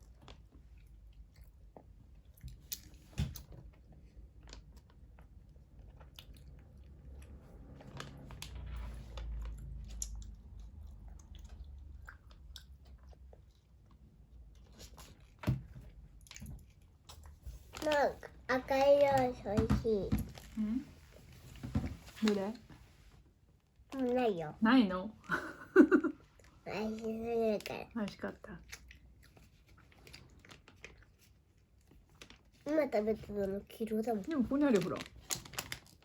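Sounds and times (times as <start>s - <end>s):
child chewing with wet smacks: 0.0s - 18.4s, 26.2s - 32.6s.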